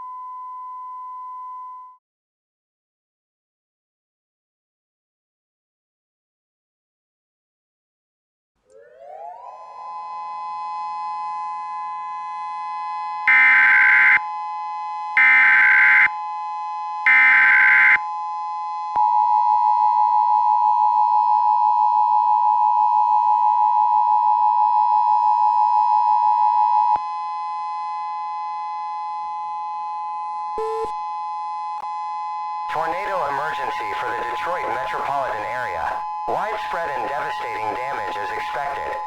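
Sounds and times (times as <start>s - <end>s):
two-tone attention signal: 30.6s - 31.0s.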